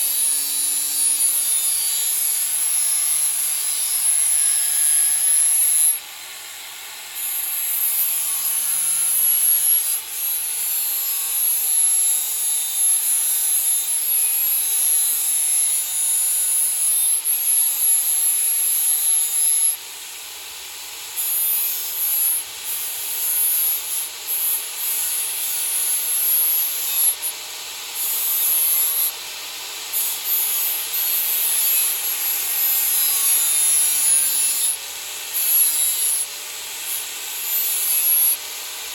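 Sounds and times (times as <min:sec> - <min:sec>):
power sander grinding metal blade: 0:00.0 - 0:19.8, 0:21.1 - 0:38.9.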